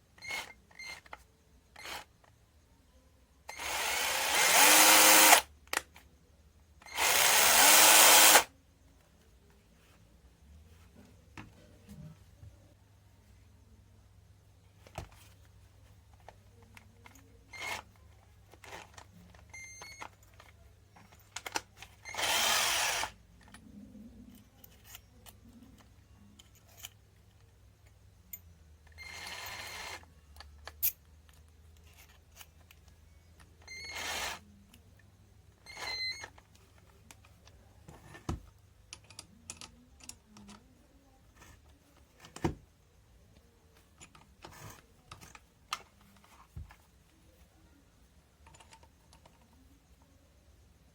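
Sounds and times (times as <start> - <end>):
cordless drill running: 1.8 - 2.1, 3.5 - 5.5, 6.9 - 8.5, 17.6 - 17.8, 22.1 - 23.2, 29.1 - 30.0, 33.7 - 34.4.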